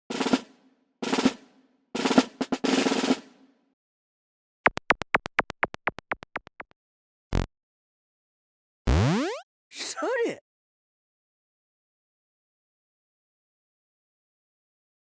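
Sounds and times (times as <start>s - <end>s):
snare drum roll: 0.1s - 1.4s, 2.0s - 3.4s
short falling blips: 8.9s - 9.4s.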